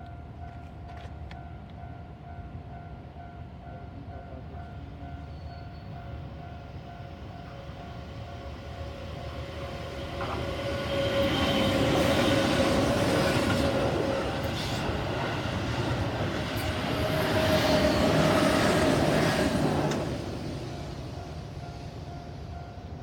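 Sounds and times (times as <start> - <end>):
train rail rumble: 0.0 - 23.0
train wheel clatter: 10.1 - 20.9.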